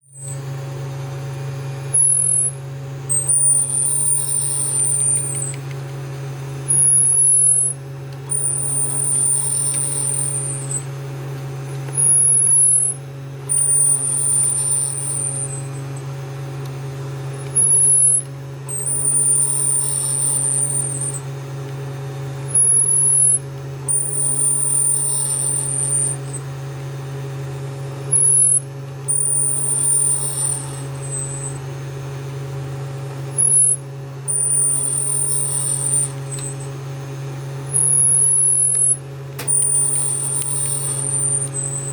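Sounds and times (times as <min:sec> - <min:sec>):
steady low hum: 0:00.0 - 0:41.9
printer squeaking: 0:01.9 - 0:05.6, 0:06.7 - 0:10.8, 0:11.9 - 0:15.7, 0:17.4 - 0:21.2, 0:22.5 - 0:26.3, 0:28.1 - 0:31.6, 0:33.4 - 0:36.6, 0:37.7 - 0:41.9.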